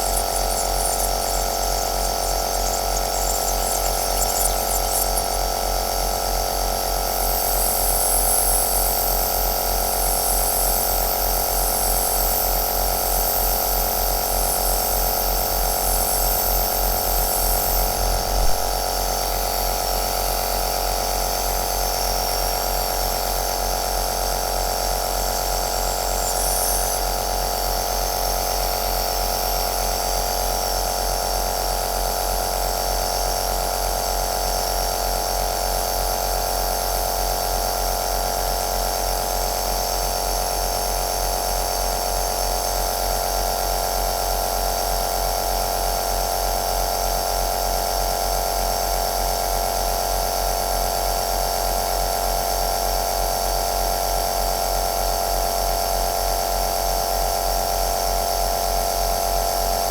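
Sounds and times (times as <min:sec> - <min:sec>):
nebulizer motor humming: 0:00.0 - 0:05.6.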